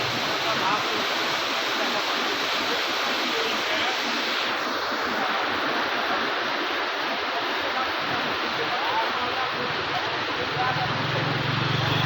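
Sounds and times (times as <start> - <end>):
floodwater rushing: 0.0 - 12.0.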